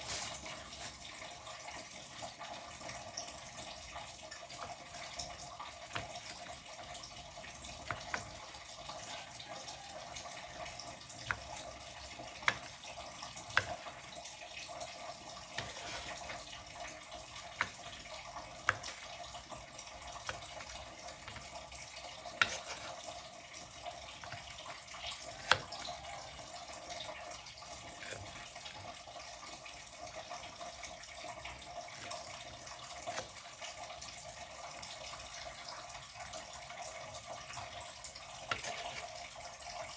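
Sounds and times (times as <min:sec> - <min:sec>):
tap water running into sink: 0:00.0 - 0:39.9.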